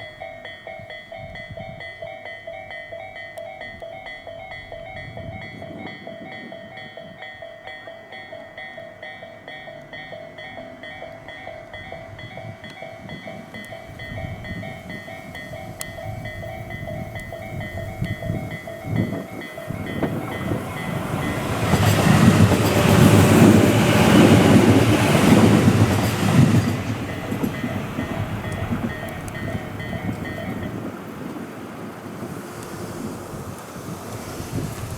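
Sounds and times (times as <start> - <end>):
level-crossing warning bell: 0.0 - 34.9
train wheels clattering: 9.4 - 34.9.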